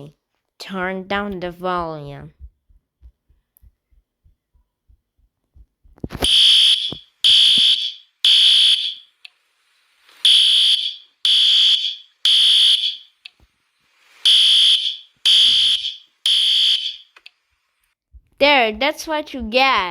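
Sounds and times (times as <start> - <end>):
faint low thuds: 1.1 - 6.2
fire alarm beeping: 6.2 - 9.1, 10.2 - 13.2, 14.3 - 17.2.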